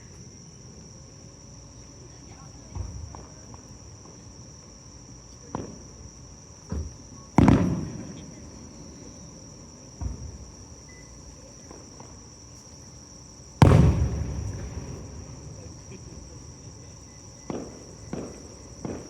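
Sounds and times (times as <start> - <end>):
fireworks bursting: 7.3 - 12.8, 13.5 - 19.0
rumbling firework boom: 7.4 - 8.3, 13.6 - 19.0.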